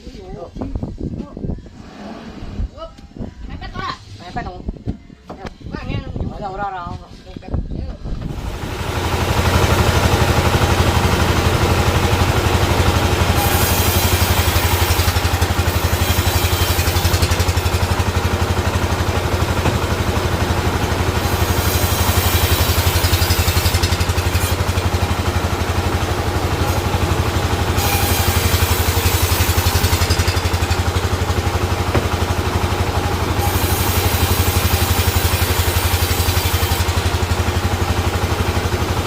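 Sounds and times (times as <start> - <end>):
sawmill machinery droning: 8.2 - 39.0.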